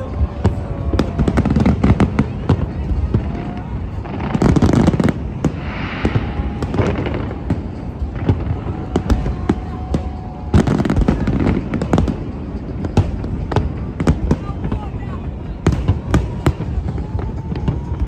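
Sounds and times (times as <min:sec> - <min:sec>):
fireworks bangs and booms: 0:00.0 - 0:18.0
fireworks crackling: 0:00.0 - 0:18.0
low rumble: 0:05.2 - 0:09.0.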